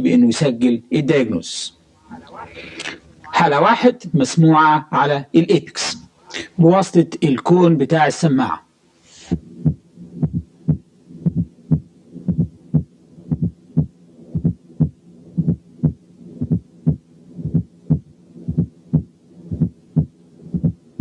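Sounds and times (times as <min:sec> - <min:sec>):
heart murmur: 0:09.3 - 0:20.8
heartbeat: 0:09.3 - 0:21.0.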